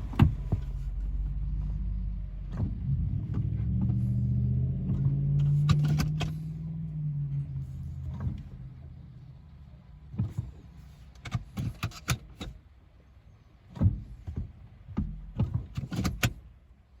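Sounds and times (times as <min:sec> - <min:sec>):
sharp clicks and knocks: 0:04.8 - 0:06.4, 0:10.1 - 0:12.6, 0:13.7 - 0:16.5.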